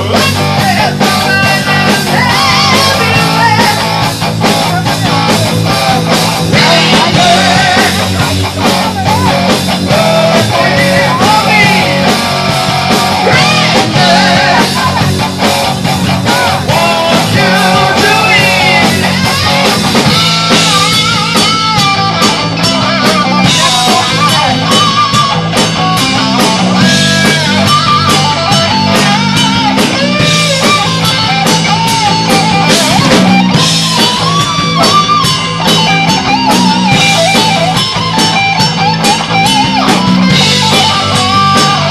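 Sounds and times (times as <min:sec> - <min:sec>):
person singing: 0:00.0 - 0:03.9, 0:05.9 - 0:15.3, 0:16.0 - 0:26.4
bass guitar: 0:00.0 - 0:41.9
distorted electric guitar: 0:00.0 - 0:41.9
drum kit: 0:00.0 - 0:41.9.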